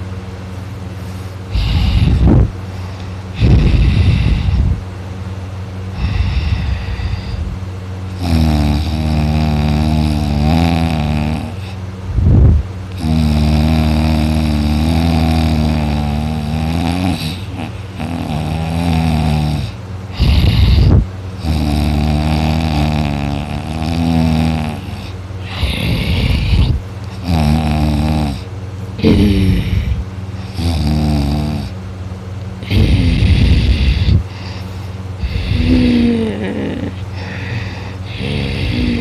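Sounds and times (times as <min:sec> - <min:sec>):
man moaning in sleep: 0:01.5 - 0:02.5, 0:03.3 - 0:04.8, 0:08.2 - 0:11.8, 0:12.9 - 0:28.4, 0:29.0 - 0:31.8, 0:32.6 - 0:39.0
man snoring: 0:01.5 - 0:04.8, 0:05.9 - 0:31.8, 0:32.6 - 0:39.0.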